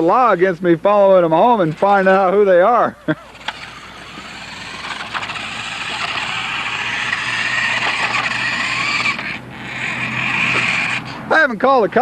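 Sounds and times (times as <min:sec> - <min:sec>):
toy car electric motor whirring: 0:03.2 - 0:11.3
wheels running over pavement: 0:03.3 - 0:11.2.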